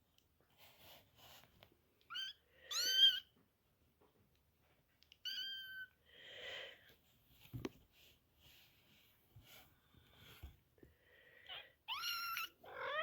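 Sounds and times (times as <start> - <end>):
cat chirping: 2.1 - 3.3, 5.2 - 5.9, 11.9 - 13.0
soft breathy sound: 6.0 - 7.2, 8.0 - 11.8
cat meowing: 11.9 - 13.0.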